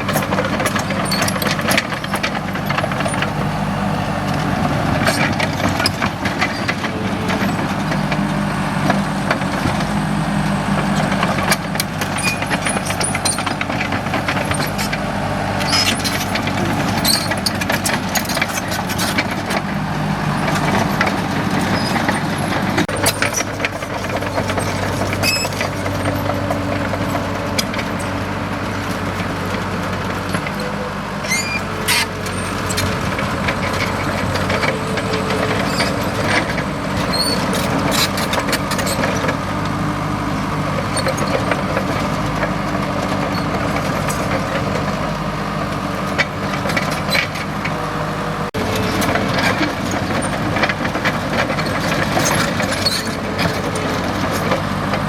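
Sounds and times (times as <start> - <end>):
bulldozer diesel engine running: 0.0 - 55.0
short high squeaks: 25.0 - 26.1, 31.2 - 32.9, 33.8 - 39.2.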